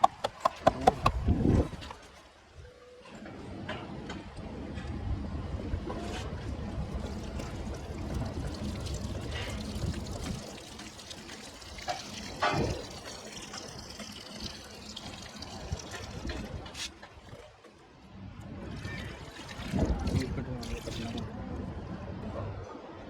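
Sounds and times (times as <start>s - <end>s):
liquid pouring and trickling: 6.8s - 17.6s, 18.4s - 21.3s.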